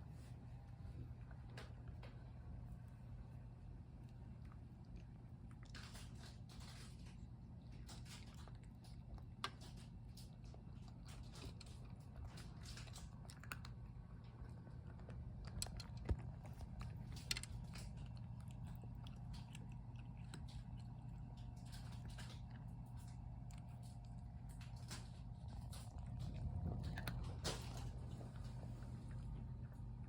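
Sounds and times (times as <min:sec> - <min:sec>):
steady low hum: 0:00.0 - 0:30.0
cat crunching food: 0:00.3 - 0:30.0.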